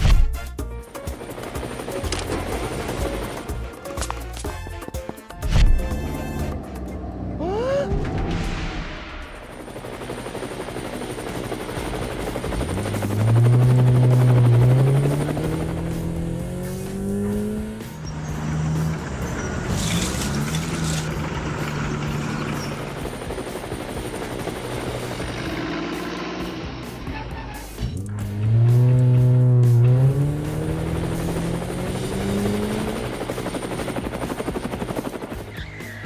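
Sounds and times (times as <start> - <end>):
vehicle engine revving: 12.5 - 23.1, 25.0 - 33.4.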